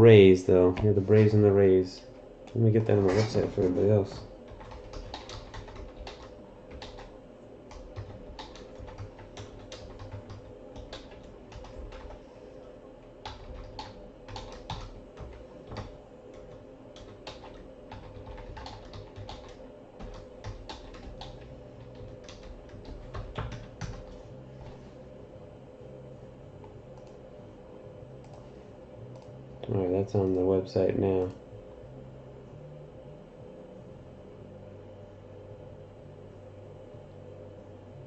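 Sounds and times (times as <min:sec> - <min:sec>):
faint steady hum: 0:00.0 - 0:38.0
computer keyboard typing: 0:03.2 - 0:07.1, 0:07.7 - 0:12.2, 0:13.2 - 0:24.2.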